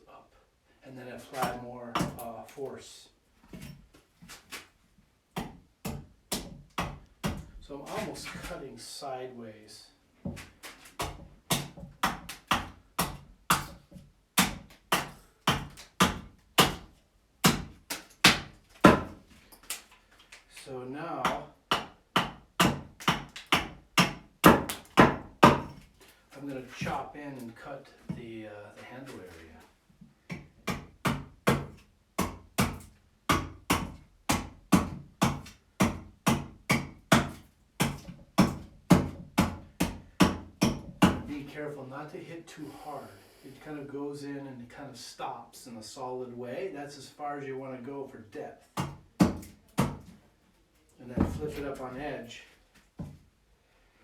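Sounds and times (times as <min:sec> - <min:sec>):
axe chopping wood: 0:01.4 - 0:02.3, 0:05.4 - 0:07.5, 0:10.9 - 0:13.8, 0:14.4 - 0:19.2, 0:21.2 - 0:25.8, 0:30.3 - 0:41.3, 0:48.8 - 0:50.1.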